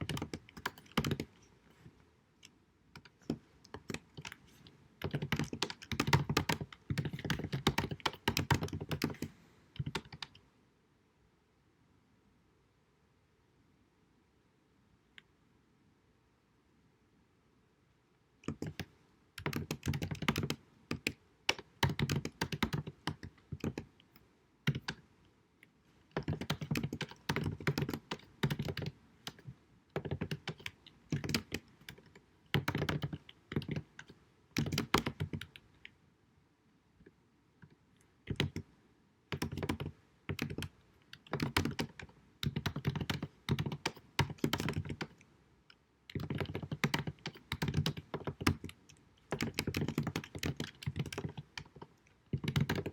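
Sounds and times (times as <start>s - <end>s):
computer keyboard typing: 0.0s - 1.5s, 3.0s - 10.4s, 18.4s - 23.9s, 24.6s - 25.0s, 26.1s - 35.6s, 38.3s - 38.7s, 39.3s - 45.2s, 46.1s - 52.9s.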